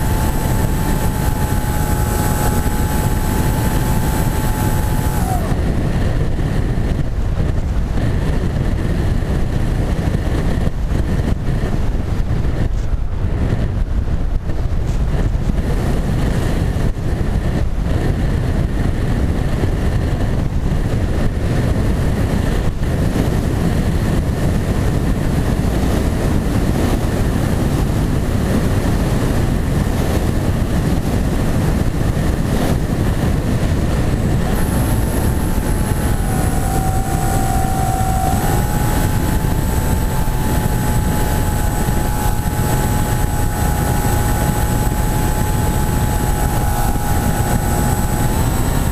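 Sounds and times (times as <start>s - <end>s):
higher whine: 0.0s - 10.7s, 28.7s - 48.9s
motor and propeller whining: 0.0s - 48.9s
wind rushing over camera: 0.0s - 48.9s.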